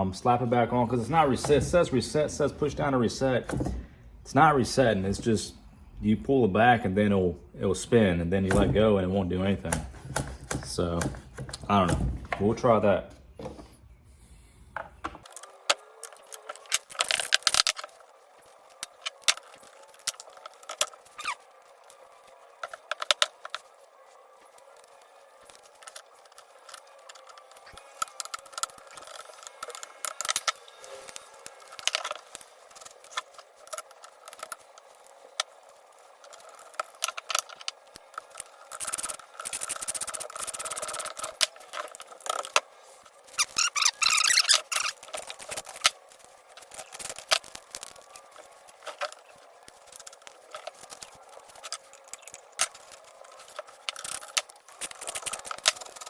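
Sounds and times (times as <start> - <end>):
hand tools clicking and rattling: 24.8 - 42.7, 43.3 - 56.0.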